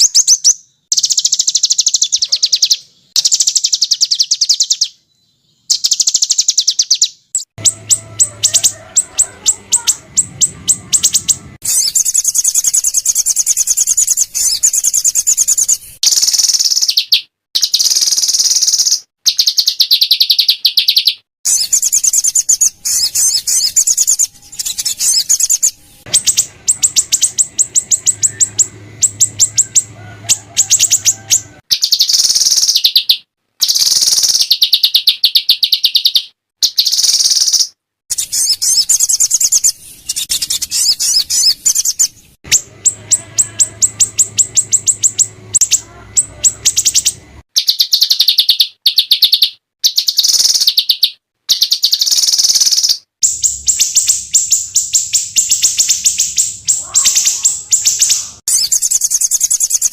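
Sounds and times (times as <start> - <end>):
songbirds trilling and chattering: 0.0 - 59.9.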